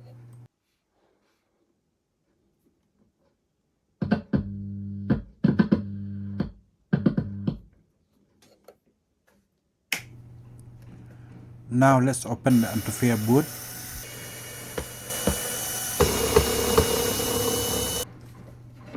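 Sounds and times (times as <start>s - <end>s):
low steady hum: 0.0s - 0.5s.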